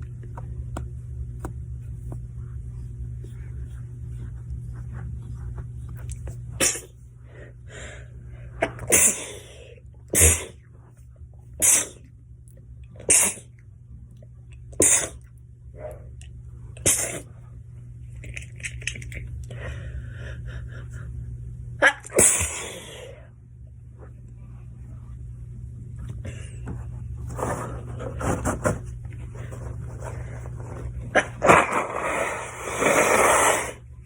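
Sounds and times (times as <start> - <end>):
woman sneezing: 8.8 - 9.5, 11.6 - 12.0, 13.0 - 13.5, 21.8 - 23.1.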